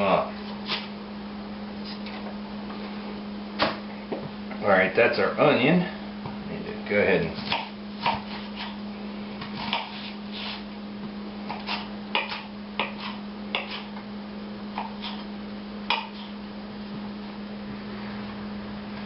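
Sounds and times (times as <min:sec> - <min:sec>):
knife chopping on cutting board: 0:07.4 - 0:08.8, 0:09.4 - 0:10.1, 0:11.5 - 0:13.9, 0:15.9 - 0:16.4.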